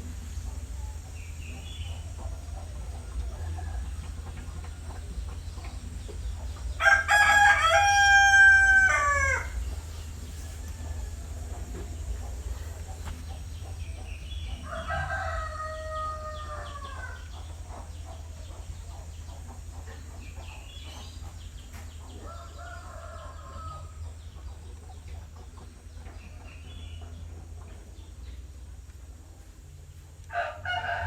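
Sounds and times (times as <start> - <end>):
rooster crowing: 6.8 - 12.1, 14.6 - 17.4, 22.2 - 24.0, 30.3 - 31.0.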